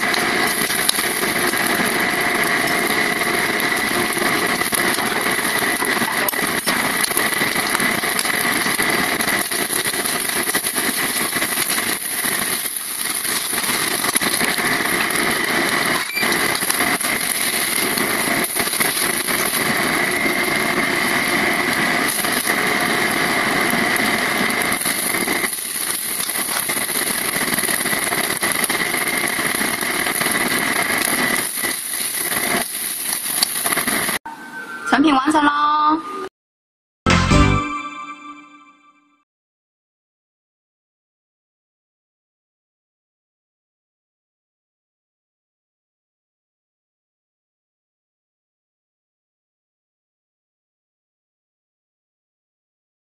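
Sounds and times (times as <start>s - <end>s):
hot oil sizzling and crackling: 0.0s - 34.2s.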